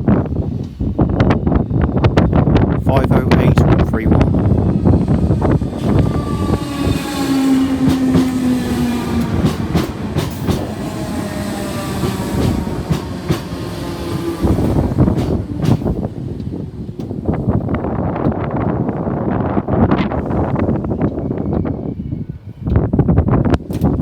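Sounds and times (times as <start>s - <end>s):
train rumble: 0.0s - 24.0s
electric train motors whining: 4.1s - 18.4s.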